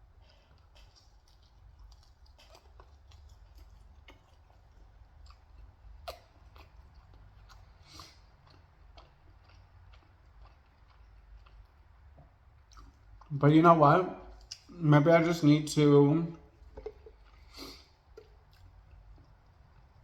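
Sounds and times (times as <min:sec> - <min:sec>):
person chewing: 0:00.0 - 0:13.4, 0:14.2 - 0:14.8, 0:16.2 - 0:20.0
wet mouth clicks: 0:05.3 - 0:09.6, 0:14.3 - 0:14.8.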